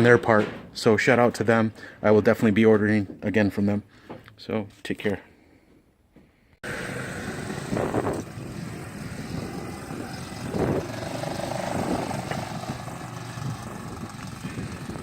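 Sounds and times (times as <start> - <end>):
small engine running: 6.6 - 15.0.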